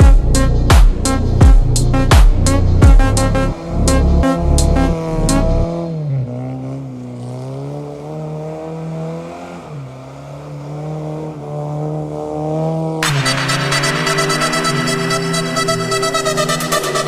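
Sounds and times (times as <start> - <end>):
electronic music: 0.0 - 5.8, 13.0 - 17.0
car engine revving: 0.0 - 17.0.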